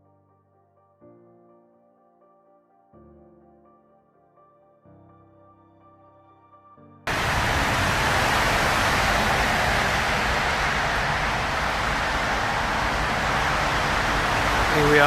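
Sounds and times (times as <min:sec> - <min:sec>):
busy road traffic: 0:07.1 - 0:15.0.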